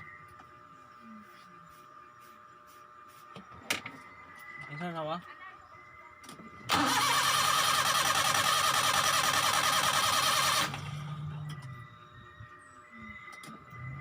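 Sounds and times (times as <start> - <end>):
faint low hum: 0.0 - 8.1, 10.4 - 14.0
starter motor cranking engine: 6.7 - 11.6.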